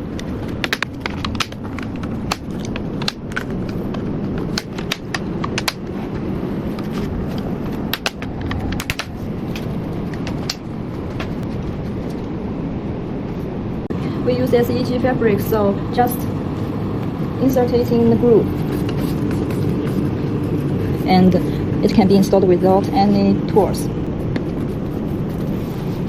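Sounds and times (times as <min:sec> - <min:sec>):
low background rumble: 0:00.0 - 0:26.0
plastic frame pieces clicking: 0:00.2 - 0:05.9, 0:07.9 - 0:10.6.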